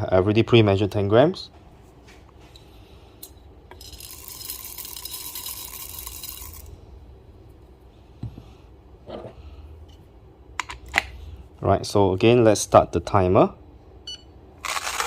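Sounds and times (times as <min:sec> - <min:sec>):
coffee beans rattling into grinder: 0:03.7 - 0:06.7, 0:14.6 - 0:15.0.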